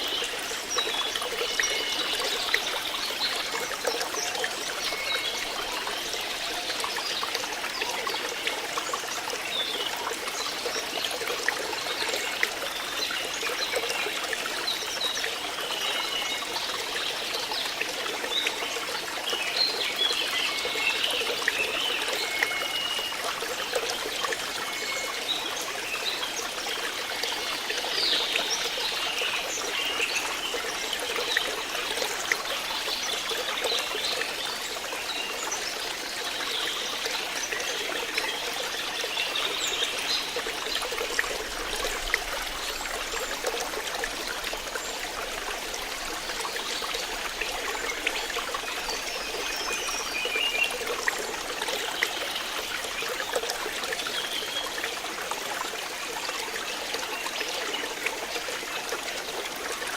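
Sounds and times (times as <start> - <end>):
stream water trickling: 0.0 - 59.9.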